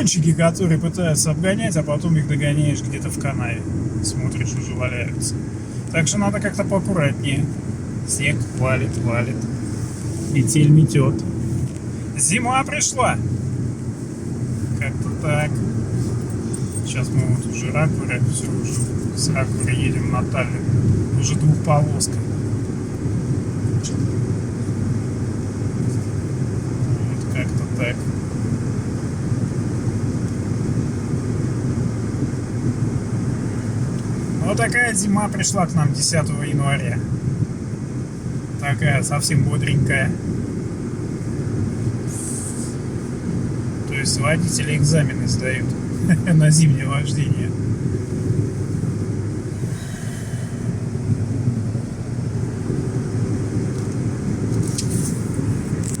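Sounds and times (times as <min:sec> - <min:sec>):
car cabin rumble at speed: 0:00.0 - 0:56.0
steady hiss: 0:37.8 - 0:56.0.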